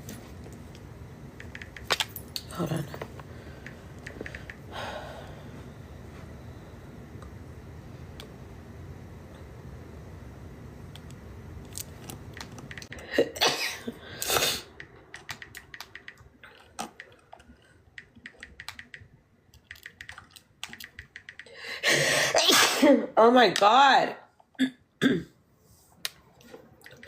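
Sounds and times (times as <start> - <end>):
woman sneezing: 13.2 - 14.7, 22.2 - 23.1.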